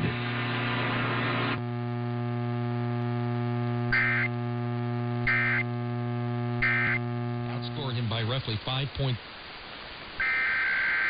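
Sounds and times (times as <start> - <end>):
electrical hum: 0.0 - 11.0
high data-tone bursts: 3.9 - 4.3, 5.3 - 5.7, 6.6 - 7.0, 10.2 - 11.0.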